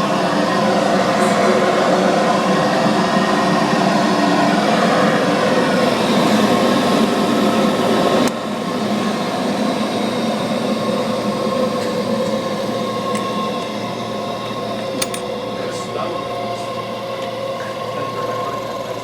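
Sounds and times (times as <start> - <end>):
vacuum cleaner running: 0.0 - 19.0
sharp click: 15.0 - 15.3.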